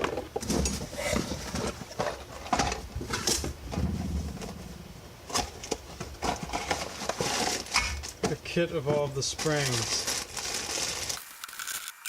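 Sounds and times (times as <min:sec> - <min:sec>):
small parts clicking and knocking: 0:11.1 - 0:12.0.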